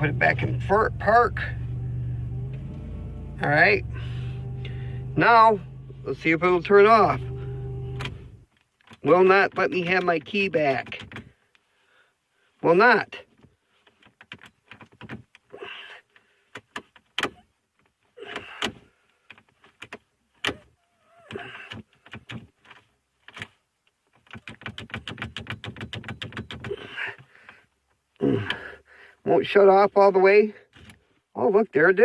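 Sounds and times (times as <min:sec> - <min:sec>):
rapid even clicking: 0:24.1 - 0:27.3.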